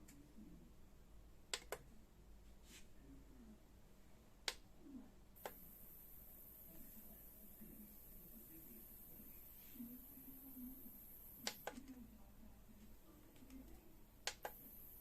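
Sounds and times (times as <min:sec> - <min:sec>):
faint high hiss: 0:04.8 - 0:15.0.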